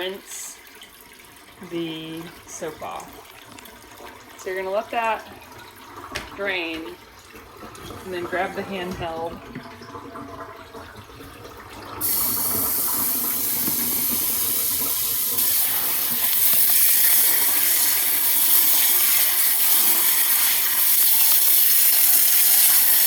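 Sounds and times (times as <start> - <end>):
water spraying from faucet sprayer: 12.0 - 23.0.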